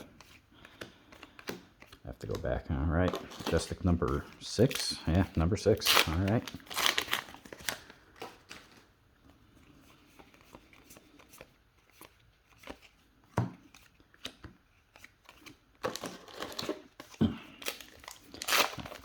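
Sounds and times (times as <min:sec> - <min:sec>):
trading cards being handled: 0:00.0 - 0:19.0
foil wrapper crinkling: 0:05.8 - 0:08.8, 0:17.6 - 0:19.0.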